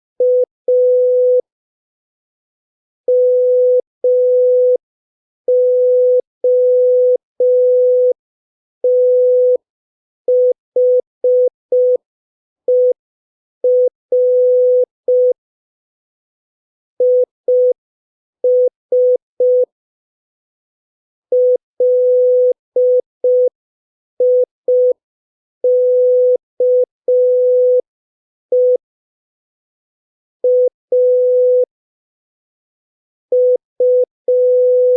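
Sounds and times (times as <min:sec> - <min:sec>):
morse code beeps: 0:33.4 - 0:34.9.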